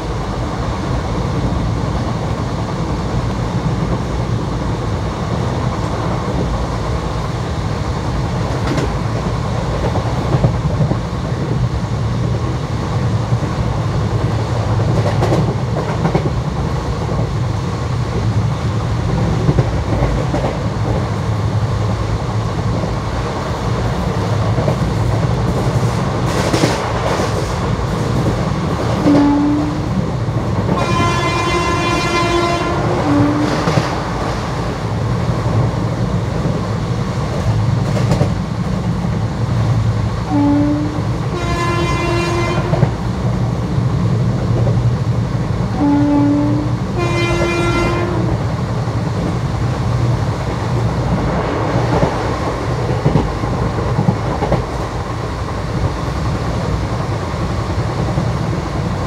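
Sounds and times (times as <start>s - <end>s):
train rumbling at speed: 0.0s - 59.0s
train horn: 29.0s - 30.0s, 30.7s - 33.8s, 40.3s - 43.0s, 45.8s - 48.4s.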